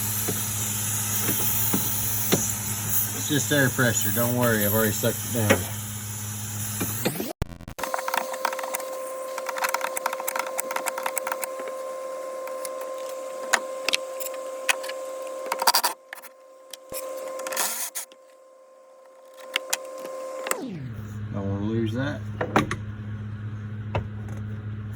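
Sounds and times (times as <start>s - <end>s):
sharp clicks and knocks: 6.8s - 11.7s
steady hum: 7.8s - 24.9s.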